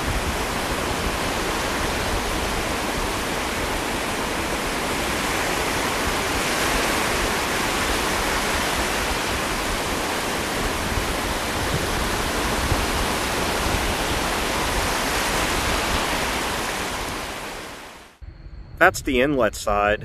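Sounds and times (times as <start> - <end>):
ocean surf rushing: 0.0 - 18.2
wind buffeting microphone: 0.0 - 20.0.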